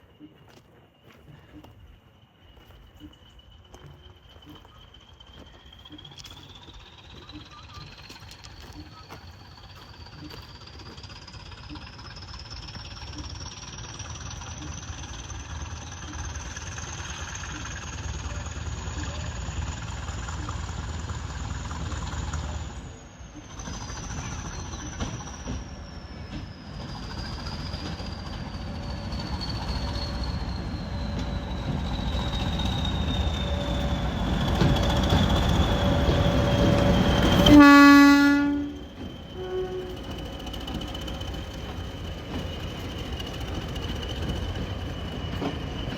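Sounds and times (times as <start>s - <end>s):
diesel locomotive engine running: 0.0s - 45.9s
turbocharger whistle: 29.4s - 41.4s
locomotive horn blast: 37.4s - 40.2s.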